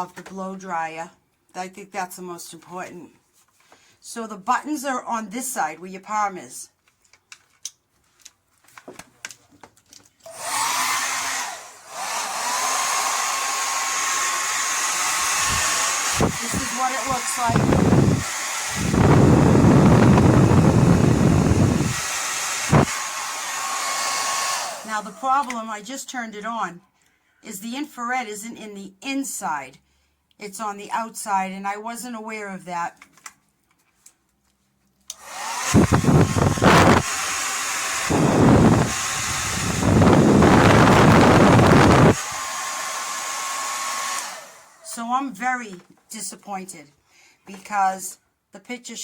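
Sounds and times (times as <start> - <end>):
hair dryer blowing: 10.2 - 25.6, 35.1 - 44.9
airflow rumble on microphone: 17.5 - 18.2, 18.8 - 22.0, 38.1 - 42.2.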